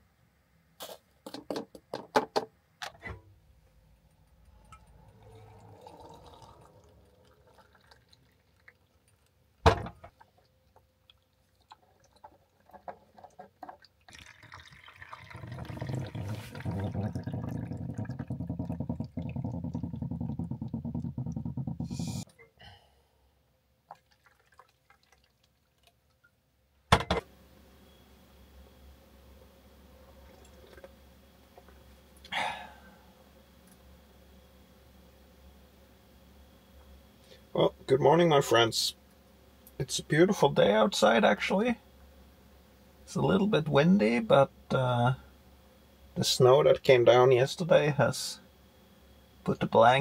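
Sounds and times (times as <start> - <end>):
water running into container: 4.5 - 9.5, 10.1 - 21.8, 23.9 - 26.1, 30.0 - 30.9.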